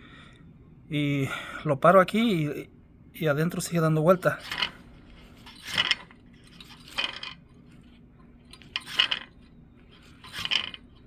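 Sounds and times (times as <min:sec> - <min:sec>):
pulley clicking rattle: 0:04.3 - 0:11.0.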